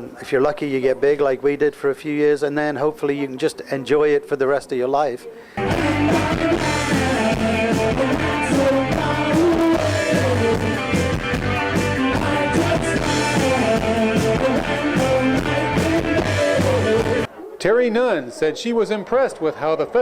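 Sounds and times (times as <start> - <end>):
live rock band playing: 5.6 - 17.3
person singing: 5.6 - 17.3.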